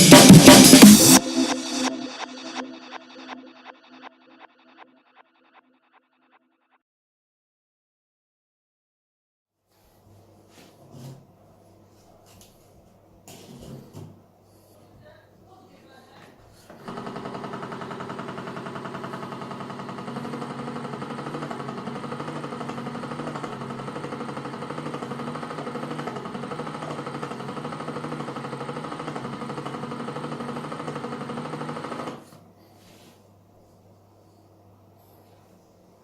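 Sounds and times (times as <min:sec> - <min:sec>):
ice cream maker motor humming: 0:16.7 - 0:32.4.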